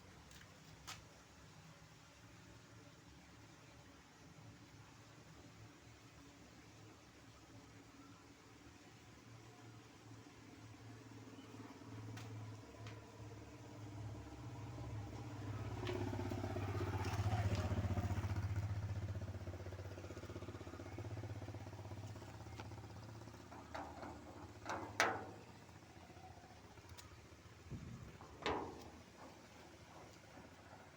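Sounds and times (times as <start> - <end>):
low engine drone: 14.4 - 30.9.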